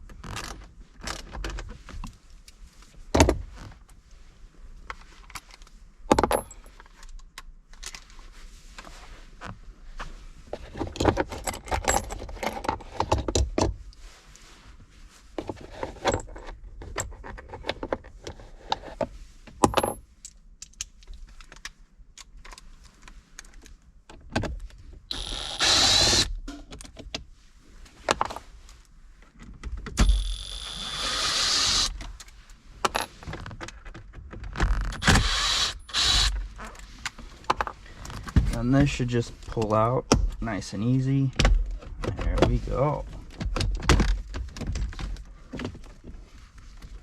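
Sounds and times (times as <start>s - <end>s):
cordless impact driver bursts: 25.1s - 26.4s, 30.0s - 32.0s, 35.0s - 36.4s.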